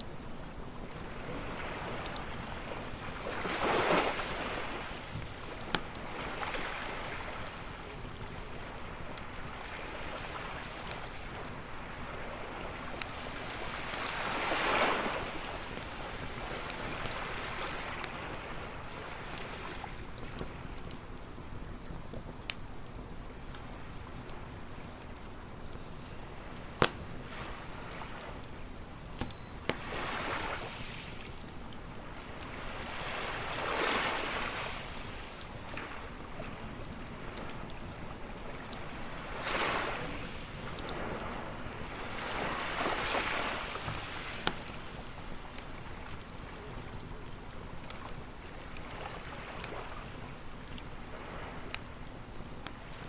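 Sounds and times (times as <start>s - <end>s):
campfire crackling and popping: 0.0s - 53.0s
sea waves washing in: 0.9s - 7.8s, 8.5s - 20.8s, 23.7s - 45.4s.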